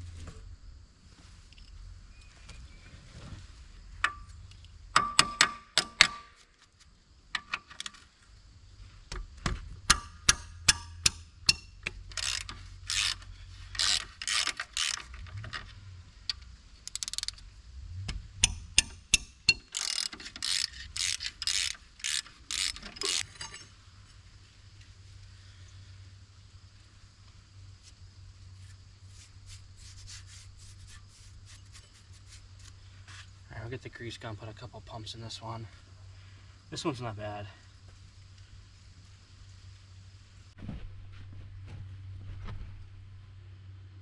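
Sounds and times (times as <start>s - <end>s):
socket ratchet clicking: 9.9s - 15.5s, 16.8s - 17.4s, 18.4s - 23.3s.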